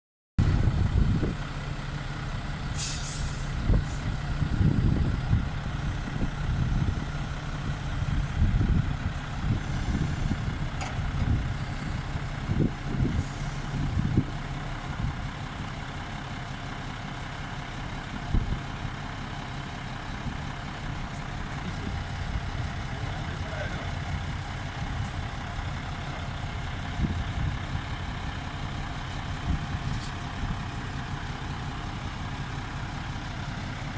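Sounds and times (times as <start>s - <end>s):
heavy engine running: 0.4s - 33.9s
short hisses: 2.7s - 4.1s.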